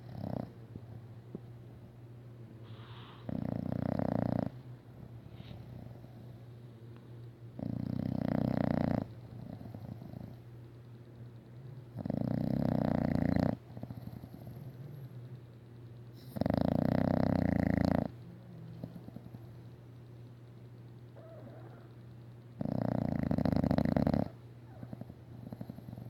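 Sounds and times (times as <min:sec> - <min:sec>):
dog snoring loudly: 0:00.0 - 0:00.5, 0:02.7 - 0:04.6, 0:07.6 - 0:10.4, 0:11.9 - 0:15.1, 0:16.2 - 0:19.4, 0:22.6 - 0:26.0
dog breathing: 0:02.6 - 0:06.4, 0:16.1 - 0:19.7.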